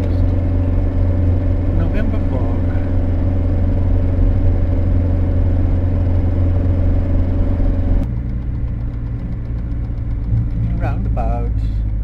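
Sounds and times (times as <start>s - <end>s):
vehicle engine and road noise: 0.0s - 12.0s
faint fast ticking: 8.0s - 12.0s.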